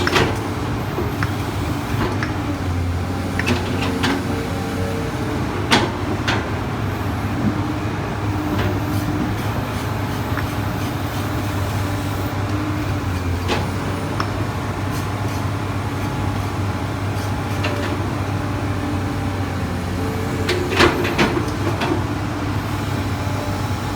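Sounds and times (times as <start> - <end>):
excavator diesel engine running: 0.0 - 23.9.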